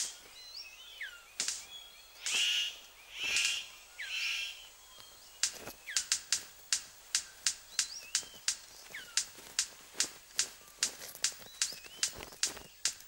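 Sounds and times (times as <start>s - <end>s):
bird sharp clicks: 0.0s - 0.3s, 1.0s - 13.0s
bird harsh rasping calls: 0.0s - 12.9s
forest birds whistling faintly: 0.0s - 13.0s.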